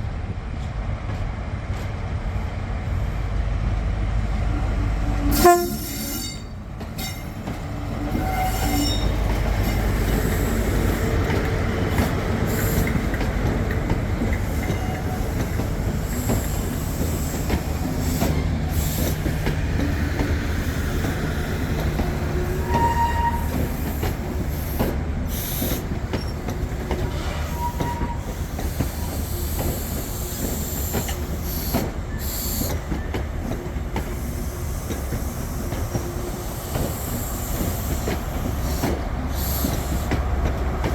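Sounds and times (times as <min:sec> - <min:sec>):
train rumbling past: 0:00.0 - 0:40.9
train wheel squeals: 0:04.6 - 0:13.2, 0:14.2 - 0:40.6.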